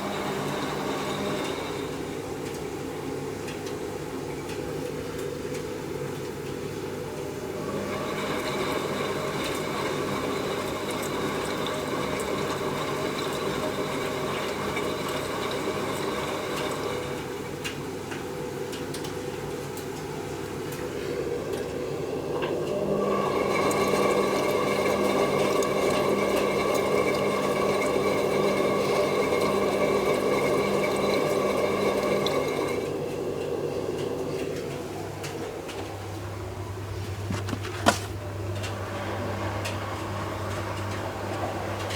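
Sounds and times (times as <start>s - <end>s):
washing machine drum motor whining: 0.0s - 41.9s
water sloshing in washer: 0.0s - 41.9s.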